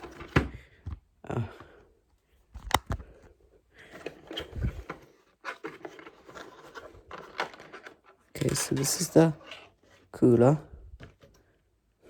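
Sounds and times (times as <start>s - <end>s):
sharp click: 2.6s - 3.0s.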